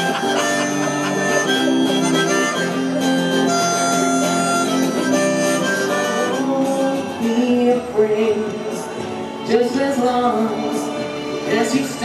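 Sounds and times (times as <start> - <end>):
harmonica playing chords: 0.0 - 7.8
guitar accompaniment: 0.0 - 12.0.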